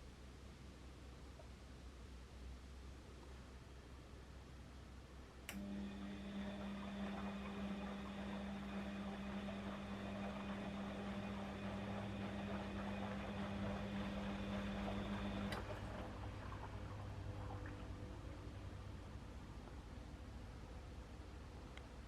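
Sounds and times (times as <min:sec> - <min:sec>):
washing machine humming: 0:05.0 - 0:22.0.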